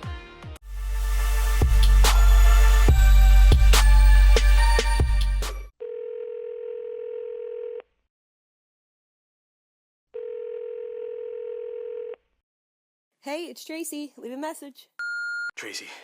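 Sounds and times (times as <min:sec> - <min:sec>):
beat-driven music: 0:00.6 - 0:05.7
telephone ringback tone: 0:05.8 - 0:07.8, 0:10.2 - 0:12.2.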